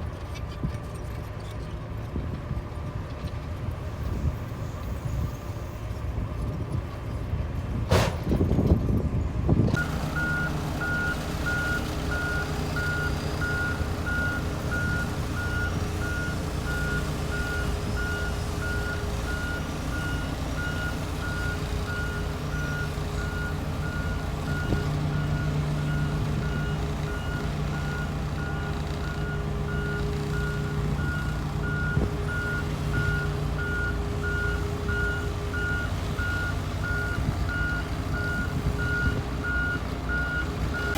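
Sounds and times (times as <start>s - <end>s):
diesel engine running: 0.0s - 40.9s
reversing alarm beeping: 9.8s - 40.9s.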